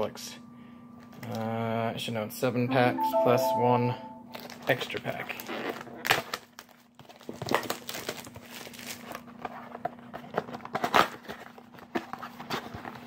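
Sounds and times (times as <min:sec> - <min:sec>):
packaging crinkling and tearing: 0:05.7 - 0:13.0.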